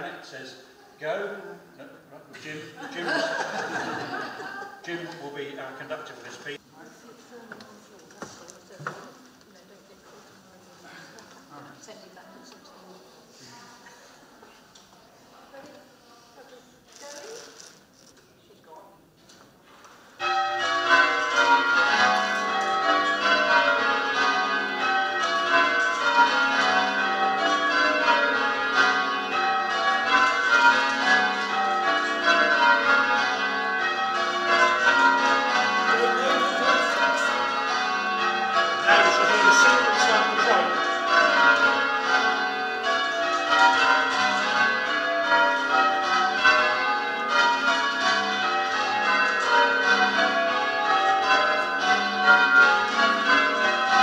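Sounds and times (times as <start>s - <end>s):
church bells change ringing: 2.7s - 6.6s, 20.2s - 54.0s.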